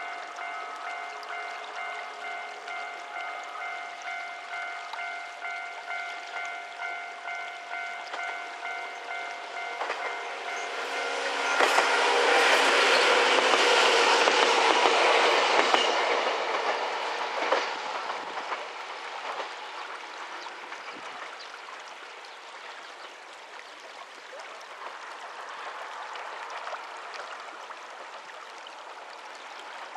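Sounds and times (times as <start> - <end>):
wheels clicking over rail joints: 0.0 - 21.5.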